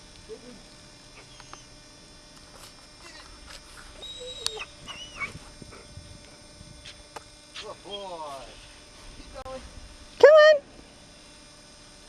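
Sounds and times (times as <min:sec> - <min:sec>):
dog whimpering: 0:04.0 - 0:05.4.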